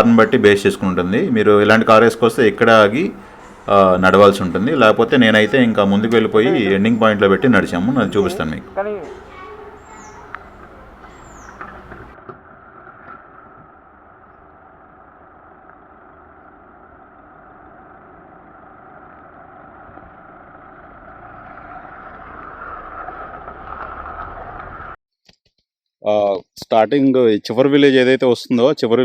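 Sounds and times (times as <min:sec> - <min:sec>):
car engine and tyre noise: 0:09.8 - 0:25.0.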